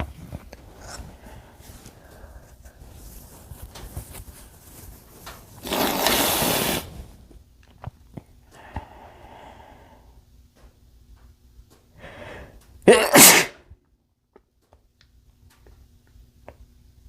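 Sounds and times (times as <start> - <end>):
soft breathing: 0.7 - 3.5, 8.5 - 10.3, 12.0 - 12.7.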